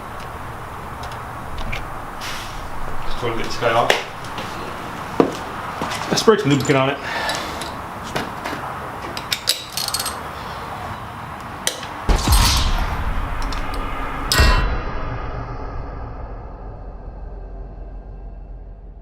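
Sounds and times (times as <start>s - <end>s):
hand tools clinking on metal: 5.9s - 10.3s.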